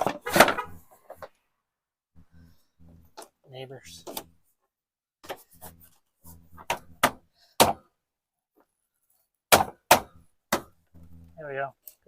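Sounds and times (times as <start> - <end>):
wooden toolbox knocking and thudding: 0.0 - 1.2.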